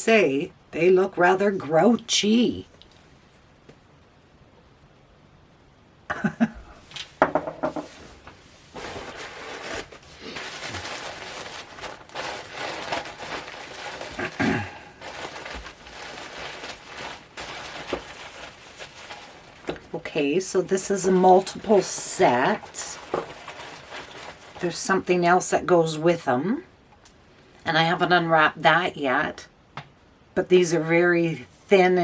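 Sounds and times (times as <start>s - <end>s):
paper wrapping rustling: 7.7s - 25.1s.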